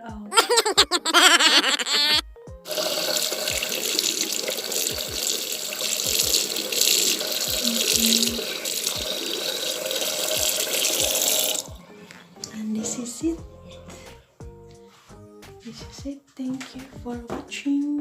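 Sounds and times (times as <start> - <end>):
tap water running into sink: 2.7 - 11.8.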